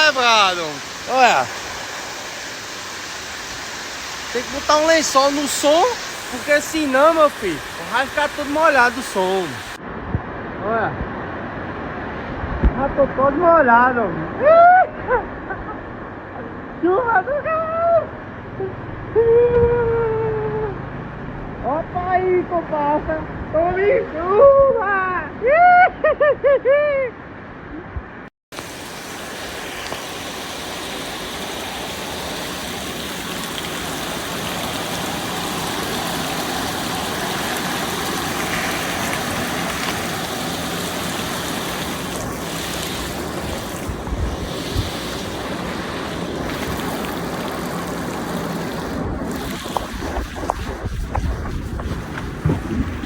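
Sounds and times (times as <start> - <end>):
heavy rain pouring: 0.0 - 9.8, 28.6 - 53.0
wind rumble on microphone: 9.8 - 13.2, 19.0 - 20.7, 42.0 - 53.0.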